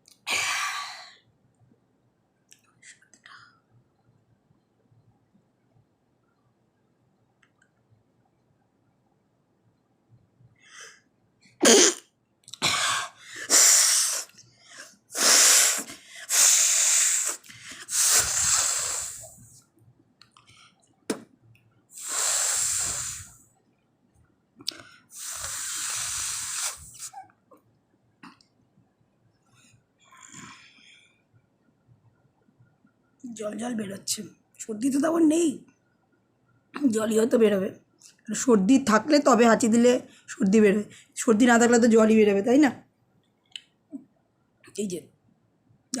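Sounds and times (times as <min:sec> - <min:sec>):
person blowing nose: 0:11.6 - 0:12.0, 0:13.4 - 0:14.3, 0:15.1 - 0:19.4, 0:22.0 - 0:23.4, 0:25.1 - 0:27.2.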